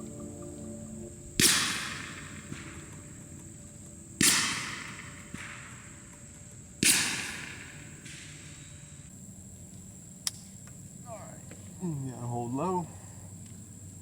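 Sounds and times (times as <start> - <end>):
suppressed rifle shots: 4.2 - 5.8, 6.8 - 8.6.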